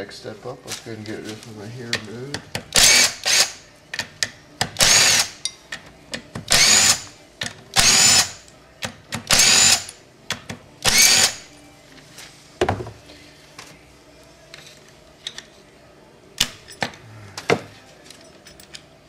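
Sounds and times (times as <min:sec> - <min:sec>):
cordless power driver whining: 0:10.9 - 0:11.4.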